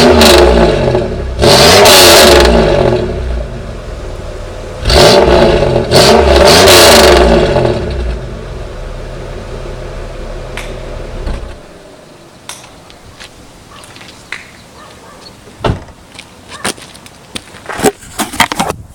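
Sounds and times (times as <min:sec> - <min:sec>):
car engine revving and idling: 0:00.0 - 0:12.3.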